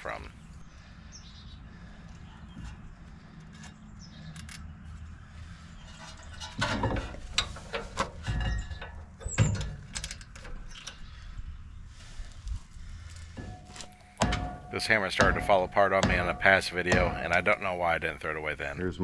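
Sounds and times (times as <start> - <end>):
metallic clattering of tools: 13.4 - 18.8
sharp knock: 13.8 - 18.8.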